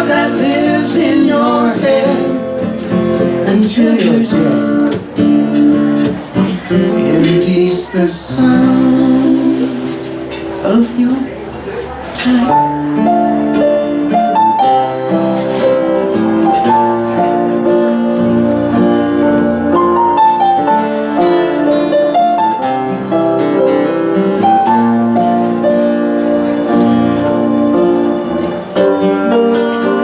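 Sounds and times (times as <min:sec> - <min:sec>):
keyboard melody over chords: 0:12.2 - 0:30.0.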